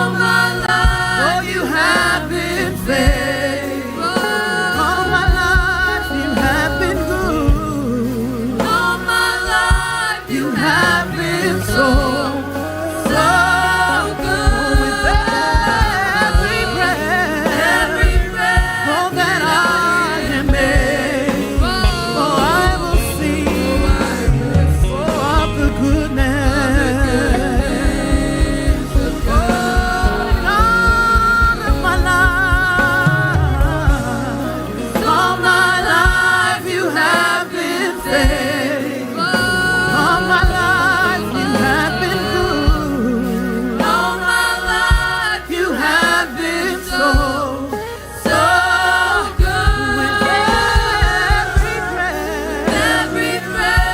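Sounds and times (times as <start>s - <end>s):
bass notes: 0.0s - 53.9s
singing voices: 0.0s - 53.9s
worship band playing: 0.0s - 53.9s
drum hits: 48.3s - 52.0s.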